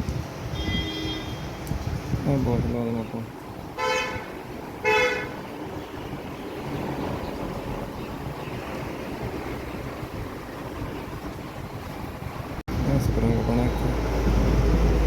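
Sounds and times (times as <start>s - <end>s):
vehicle horn toot: 0.5s - 1.6s, 3.8s - 6.0s.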